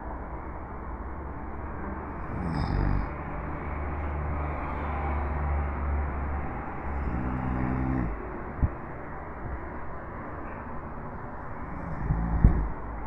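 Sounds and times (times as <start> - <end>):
steady low hum: 0.0 - 13.0
man snoring: 2.1 - 3.2, 6.5 - 8.7, 11.6 - 12.8.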